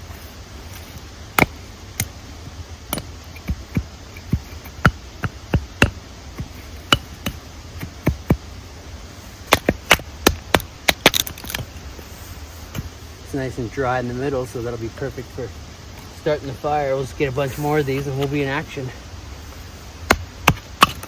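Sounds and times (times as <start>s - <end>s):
hatchet chopping wood: 1.4s - 2.2s, 2.9s - 8.5s, 9.4s - 11.7s, 20.0s - 21.0s.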